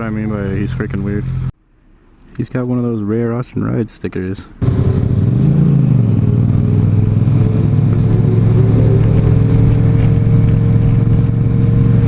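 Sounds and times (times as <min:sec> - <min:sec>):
motorcycle engine running: 0:04.6 - 0:12.0.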